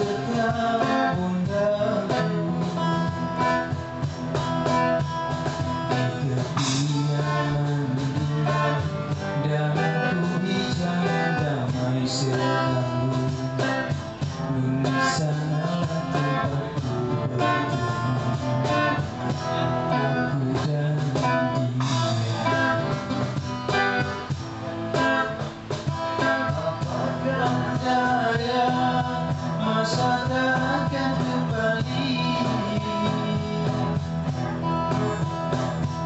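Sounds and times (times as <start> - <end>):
band playing guitar-led instrumental: 0.0 - 36.0.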